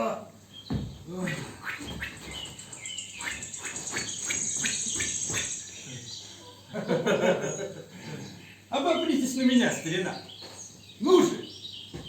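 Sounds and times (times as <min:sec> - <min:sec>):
birds chirping: 0:00.0 - 0:12.0
crickets trilling: 0:00.7 - 0:07.7.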